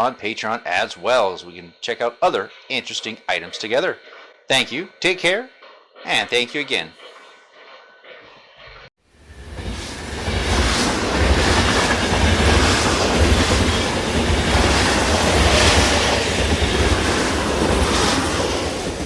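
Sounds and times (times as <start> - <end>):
train rumbling on rails: 5.0 - 19.0.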